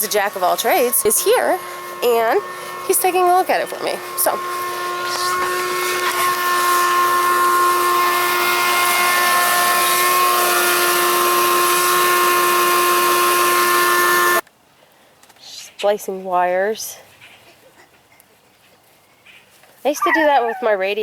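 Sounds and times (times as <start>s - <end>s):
air conditioner whine: 0.0s - 14.4s.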